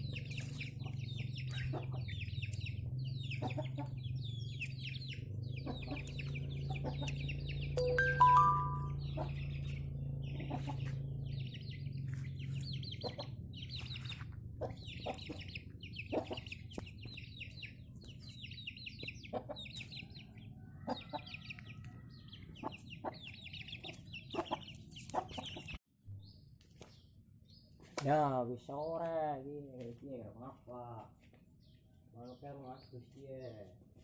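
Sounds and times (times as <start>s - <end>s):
low hum: 6.2s - 12.7s.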